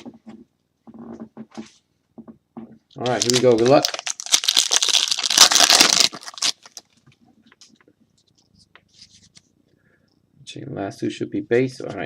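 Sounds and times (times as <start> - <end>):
wrapper being torn open: 3.0 - 6.9.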